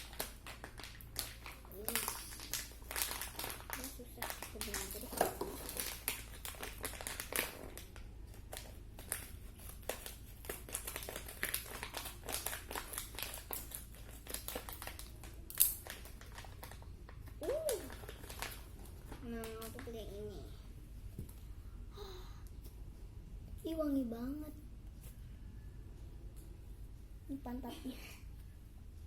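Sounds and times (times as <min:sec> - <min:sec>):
plastic packaging crinkling: 0:00.0 - 0:20.0.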